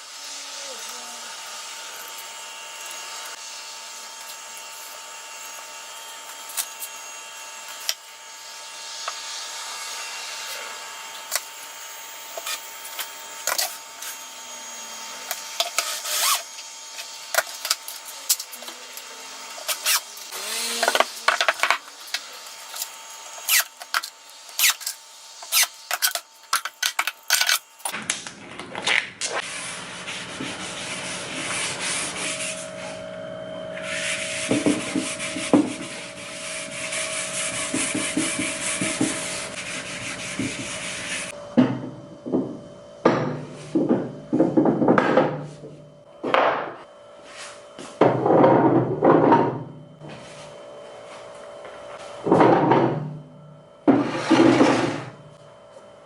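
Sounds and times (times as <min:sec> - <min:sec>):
low full rubbing noise: 0:29.5 - 0:33.1, 0:33.7 - 0:41.3.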